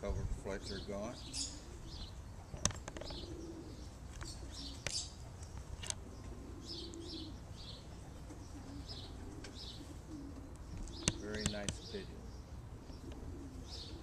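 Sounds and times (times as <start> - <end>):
pigeons cooing: 0.5 - 14.0
high bird chirps: 0.7 - 5.2
sharp clicks: 10.8 - 11.9.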